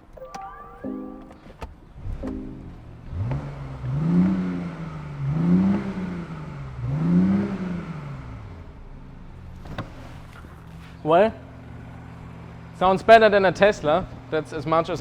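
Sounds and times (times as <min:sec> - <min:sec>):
car engine revving: 0:03.0 - 0:08.9.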